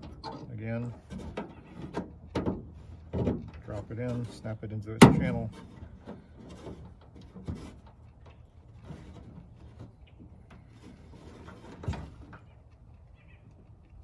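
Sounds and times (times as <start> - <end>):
metal latch rods rattling: 0.0 - 8.1.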